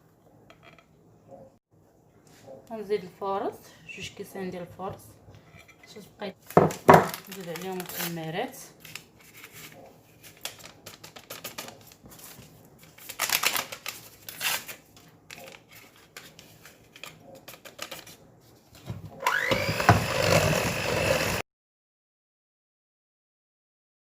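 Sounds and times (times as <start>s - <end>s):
kitchen clicking and rustling: 5.6s - 8.2s
electric mixer whining: 19.2s - 21.4s.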